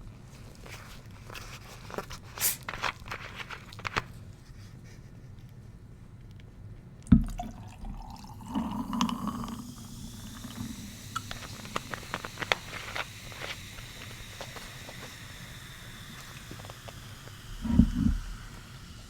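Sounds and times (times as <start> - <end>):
soda pouring over ice: 7.2 - 19.0
fizz crackles and pops: 10.1 - 19.0.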